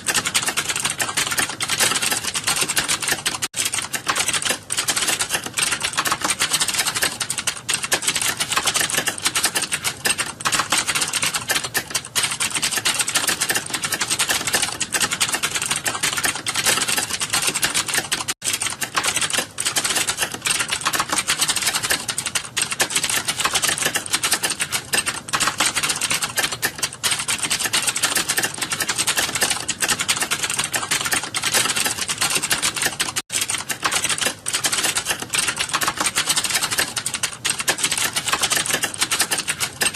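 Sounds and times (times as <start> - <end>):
fast typing on keyboard: 0.0 - 39.9.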